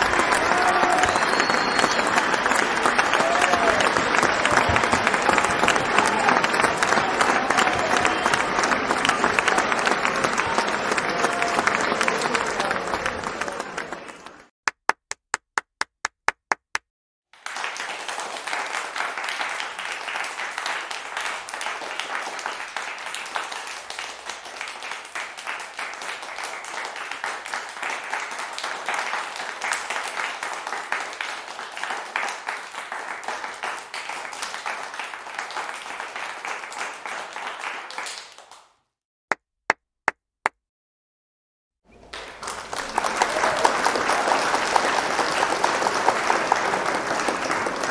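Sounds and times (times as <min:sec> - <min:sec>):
crowd applause: 0:00.0 - 0:14.5, 0:17.4 - 0:38.6, 0:41.9 - 0:47.9
person clapping: 0:00.0 - 0:16.8, 0:42.0 - 0:47.9.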